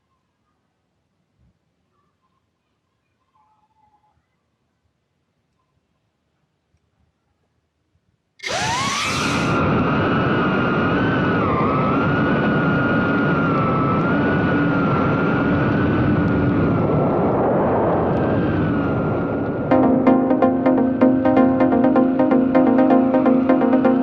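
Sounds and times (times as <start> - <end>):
quadcopter motors whining: 8.4 - 12.4.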